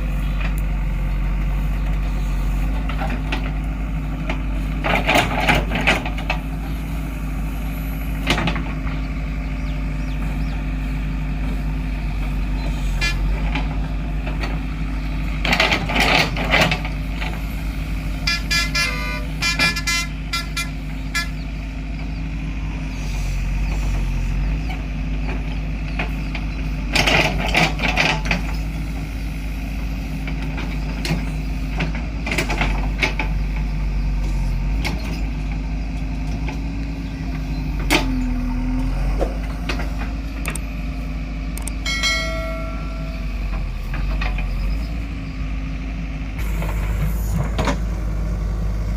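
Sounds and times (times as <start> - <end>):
diesel engine running: 0.0 - 48.9
digging gear clanking and scraping: 15.4 - 17.4.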